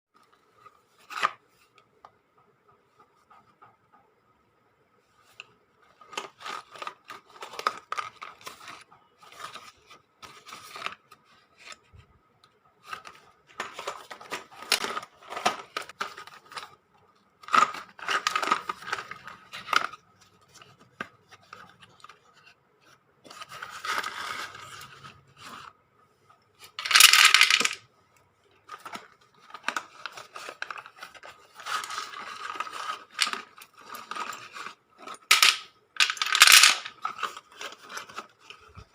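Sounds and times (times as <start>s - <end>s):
packaging rustling and tearing: 28.7s - 38.9s.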